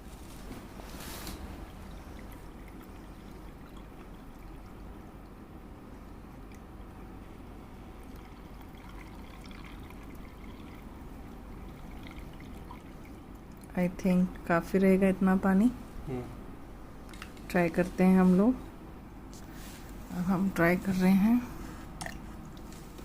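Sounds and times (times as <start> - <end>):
water pouring into fountain basin: 7.9 - 13.6.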